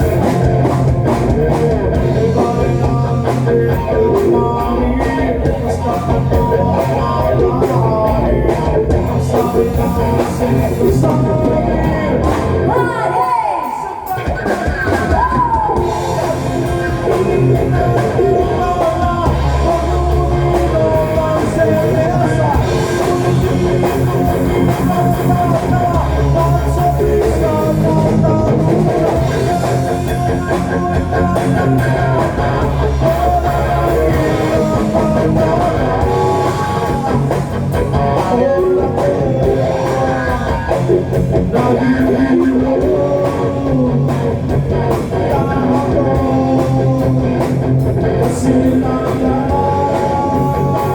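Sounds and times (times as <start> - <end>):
electric guitar playing: 0.0 - 13.3, 14.1 - 50.9
rock song over speakers: 0.0 - 50.9.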